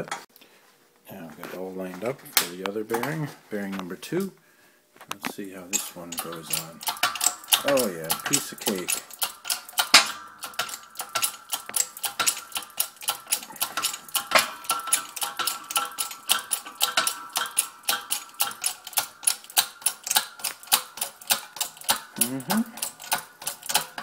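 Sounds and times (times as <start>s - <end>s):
hydraulic jack pumping clicks: 5.7s - 24.0s.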